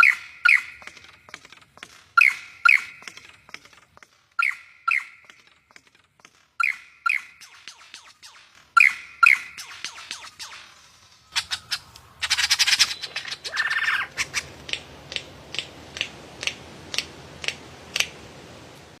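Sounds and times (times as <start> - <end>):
bird harsh squawking calls: 0.0 - 1.0, 2.1 - 3.3, 4.4 - 5.4, 6.6 - 14.6.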